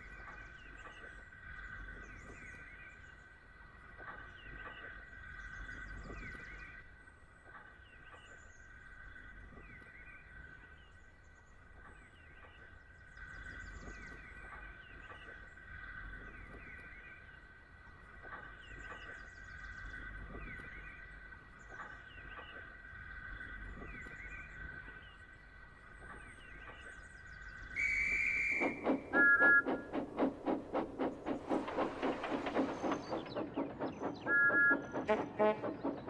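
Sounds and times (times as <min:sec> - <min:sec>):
birds chirping: 0:18.5 - 0:36.0.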